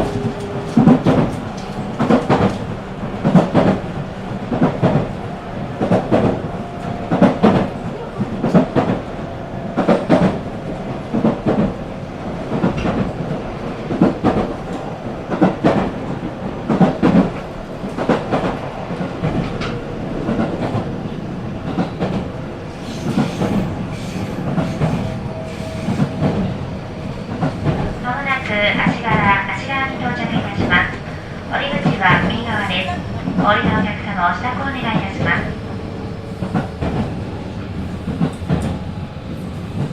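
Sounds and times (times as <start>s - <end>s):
train wheels clacking over joints: 0.0s - 11.8s, 21.6s - 28.0s, 35.1s - 39.9s
train rolling rumble: 0.0s - 39.9s.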